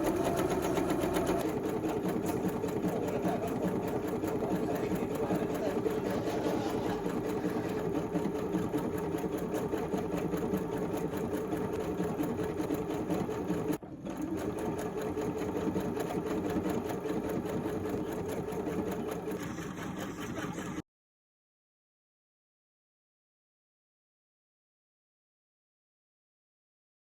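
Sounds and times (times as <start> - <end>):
sewing machine stitching: 0.0 - 20.8.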